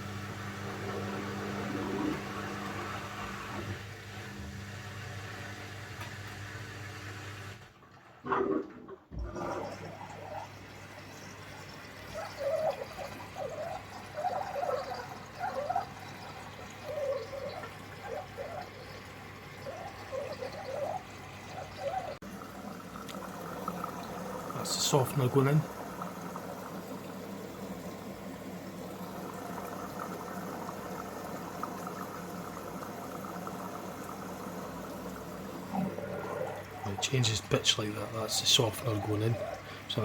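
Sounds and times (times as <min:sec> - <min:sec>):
washing machine hum: 0:00.0 - 0:40.0
water rushing and gurgling: 0:09.1 - 0:40.0.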